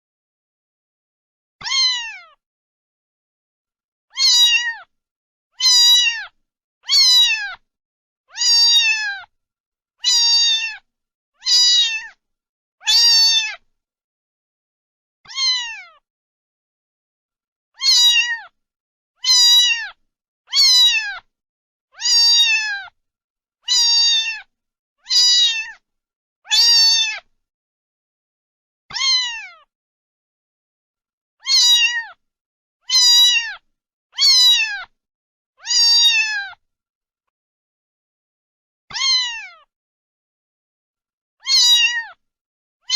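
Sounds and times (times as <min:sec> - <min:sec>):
cat meowing: 0:01.6 - 0:02.4, 0:04.1 - 0:04.9, 0:05.6 - 0:07.6, 0:08.3 - 0:09.3, 0:10.0 - 0:12.2, 0:12.8 - 0:13.6, 0:15.3 - 0:16.0, 0:17.8 - 0:18.6, 0:19.2 - 0:21.3, 0:22.0 - 0:23.0, 0:23.6 - 0:25.8, 0:26.5 - 0:27.3, 0:28.9 - 0:29.7, 0:31.4 - 0:32.2, 0:32.8 - 0:35.0, 0:35.6 - 0:36.6, 0:38.9 - 0:39.7, 0:41.4 - 0:42.2.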